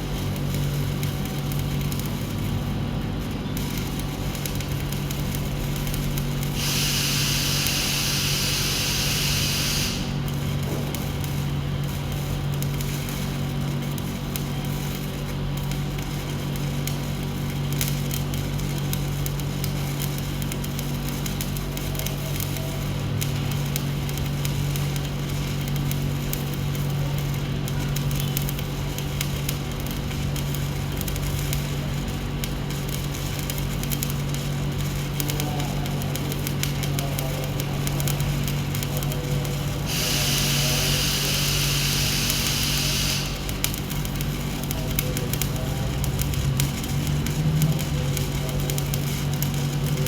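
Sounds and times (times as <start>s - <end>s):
electrical hum: 0.0s - 13.6s, 23.4s - 50.0s
welding arc crackling: 0.0s - 50.0s
bright hiss: 6.6s - 10.3s, 39.8s - 44.2s.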